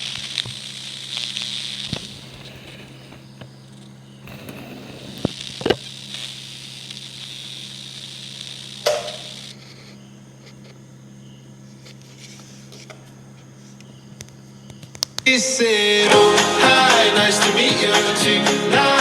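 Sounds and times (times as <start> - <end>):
sharp pops: 0.0 - 9.6
speaker crackling static: 0.0 - 15.3.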